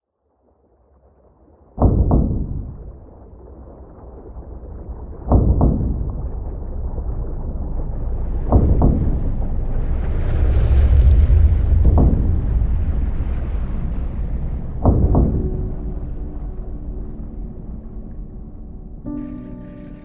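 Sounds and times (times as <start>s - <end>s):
low rumble and hiss: 0.7s - 20.0s
booming rumble: 1.6s - 20.0s
deep double knocks: 1.8s - 3.2s, 5.1s - 20.0s.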